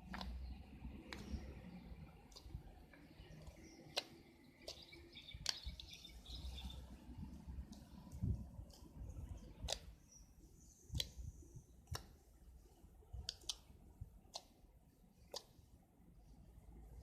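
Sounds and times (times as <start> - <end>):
slime popping and clicking: 0.0 - 6.0, 7.5 - 10.0, 15.3 - 15.6.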